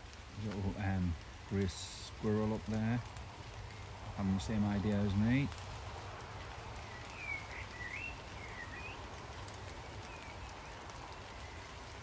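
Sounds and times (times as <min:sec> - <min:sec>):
steady rain falling: 0:00.0 - 0:12.0
songbird singing: 0:06.7 - 0:12.0.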